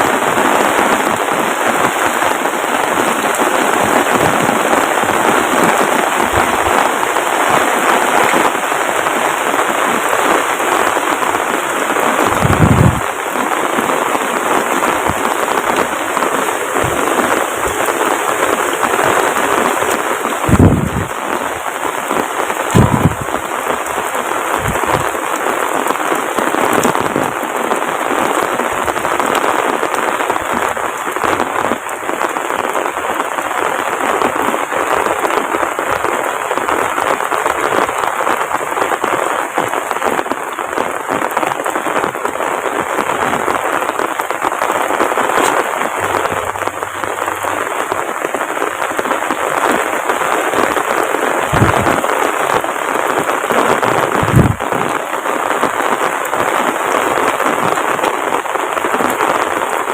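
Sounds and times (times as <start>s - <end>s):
heavy rain pouring: 0.0s - 59.9s
loud low thumps: 12.3s - 13.0s, 20.4s - 21.2s, 22.7s - 23.4s, 51.5s - 52.0s, 54.1s - 54.7s.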